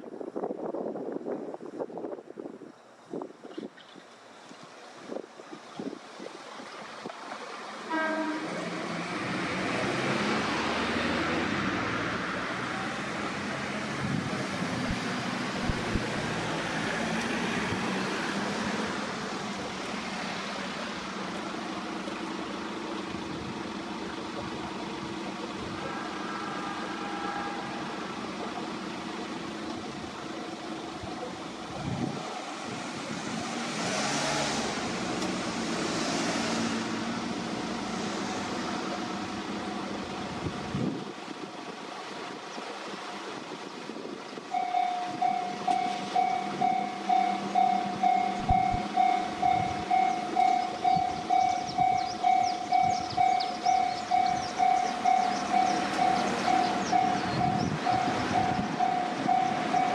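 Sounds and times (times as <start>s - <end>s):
vehicle passing: 8.6s - 30.2s, 32.0s - 40.0s, 45.1s - 59.9s
level crossing alarm dinging: 44.5s - 59.9s.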